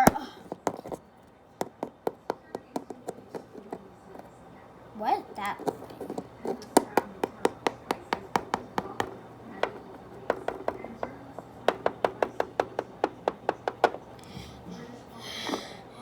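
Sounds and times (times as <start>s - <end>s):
plastic figures tapping on surface: 0.0s - 1.0s, 1.6s - 4.3s, 5.4s - 14.3s.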